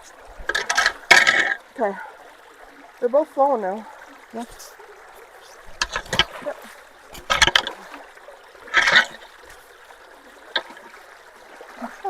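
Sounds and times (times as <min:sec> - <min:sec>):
creek water trickling: 0:00.0 - 0:12.0
scrapes and thumps: 0:00.3 - 0:01.6, 0:05.4 - 0:08.0, 0:08.7 - 0:09.7.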